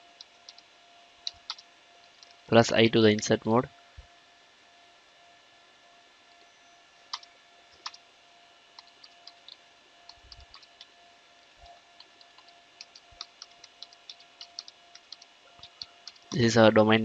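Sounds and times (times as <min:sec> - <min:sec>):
computer keyboard typing: 0:00.0 - 0:00.6, 0:01.2 - 0:02.4, 0:07.1 - 0:08.0, 0:08.8 - 0:10.9, 0:11.9 - 0:16.4.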